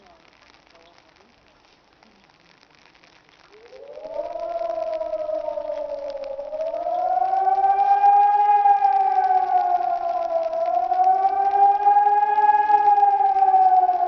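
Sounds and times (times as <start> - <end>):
electronic siren wailing: 3.6 - 14.0.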